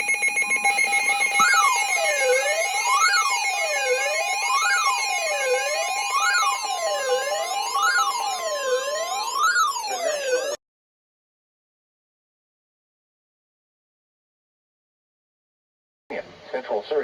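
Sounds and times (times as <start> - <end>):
wailing alert siren tone: 0.0 - 10.6.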